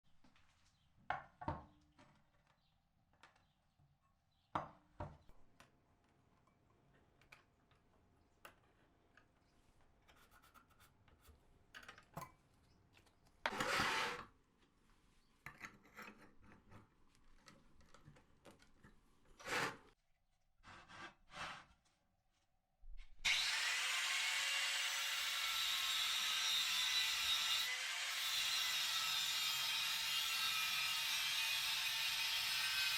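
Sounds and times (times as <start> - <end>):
power tool whining: 23.3 - 32.9.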